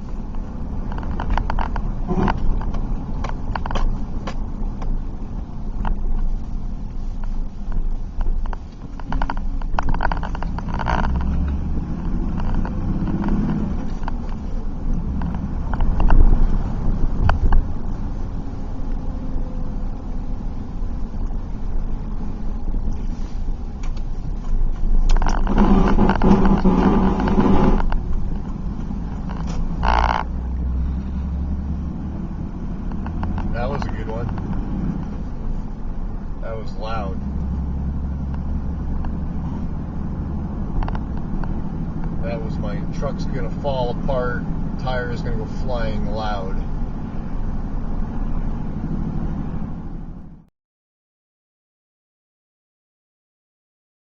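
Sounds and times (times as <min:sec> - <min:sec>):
grinding and rattling from truck: 0:00.0 - 0:50.5
road and engine rumble: 0:00.0 - 0:50.5
truck driving drone: 0:00.0 - 0:50.5
clicking and grinding: 0:00.3 - 0:04.9, 0:07.2 - 0:14.5, 0:23.8 - 0:30.3.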